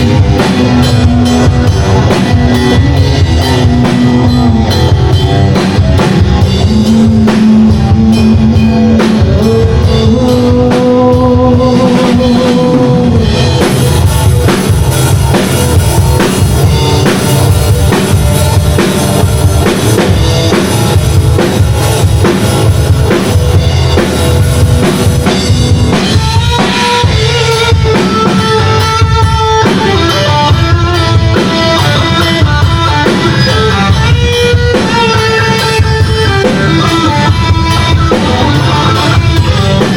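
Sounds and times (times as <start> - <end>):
drum kit beat with rimshots: 0.0 - 39.9
rock band playing: 0.0 - 39.9.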